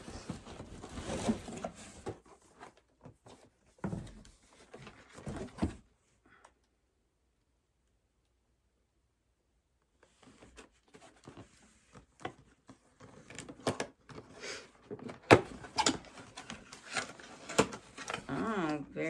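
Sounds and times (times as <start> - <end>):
packaging rustling and crinkling: 14.9 - 18.5.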